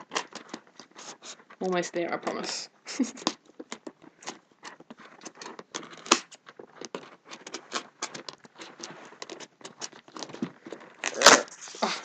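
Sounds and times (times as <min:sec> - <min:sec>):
scissors cutting tape and cardboard: 0:03.1 - 0:12.0.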